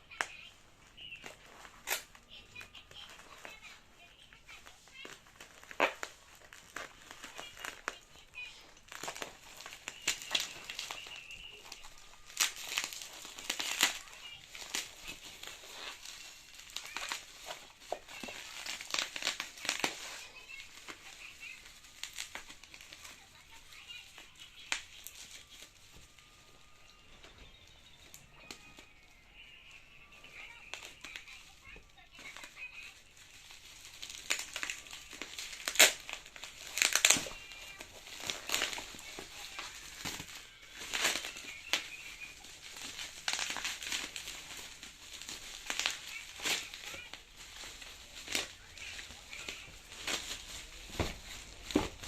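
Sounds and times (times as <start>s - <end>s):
plastic packaging crinkling: 0.0s - 52.0s.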